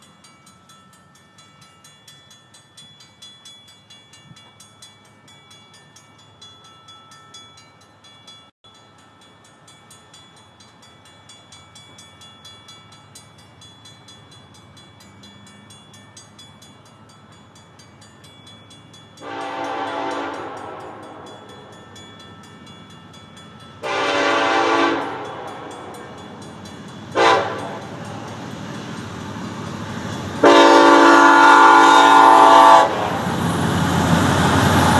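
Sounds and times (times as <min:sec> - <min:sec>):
locomotive air horn: 0:19.2 - 0:21.5, 0:23.8 - 0:25.9, 0:27.2 - 0:27.9, 0:30.4 - 0:33.3.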